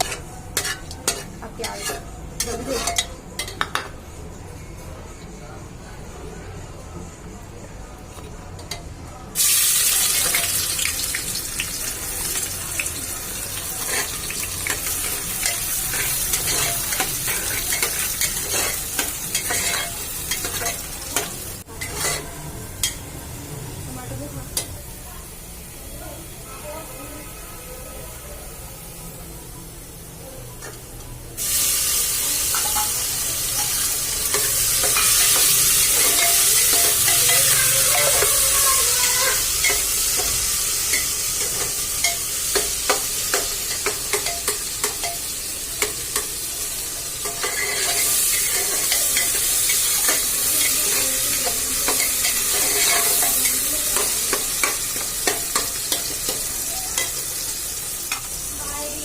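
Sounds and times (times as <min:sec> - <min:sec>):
food sizzling in hot oil: 0:09.4 - 0:27.3, 0:31.3 - 0:59.0.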